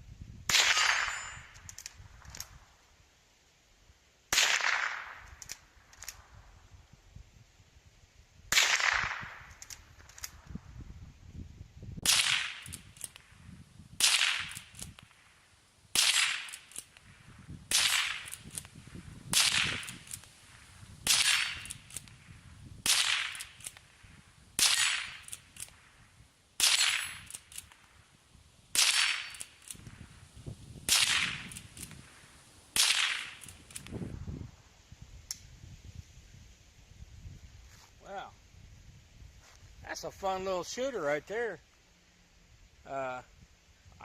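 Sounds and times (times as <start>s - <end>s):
rifle shots: 0.5s - 1.6s, 4.3s - 6.1s, 8.5s - 10.4s, 12.0s - 13.4s, 14.0s - 15.3s, 15.9s - 25.9s, 26.6s - 27.8s, 28.7s - 30.0s, 30.9s - 33.9s
rifle lever clicks: 5.3s - 6.2s, 9.5s - 10.4s.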